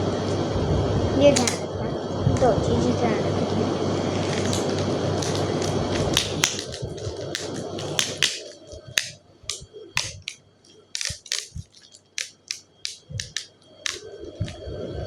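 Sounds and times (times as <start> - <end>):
sticky tape crackling on paper: 4.0 - 14.6.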